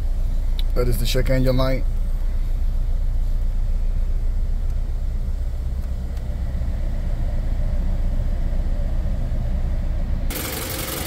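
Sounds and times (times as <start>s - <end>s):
car engine idling roughly: 10.3s - 11.0s.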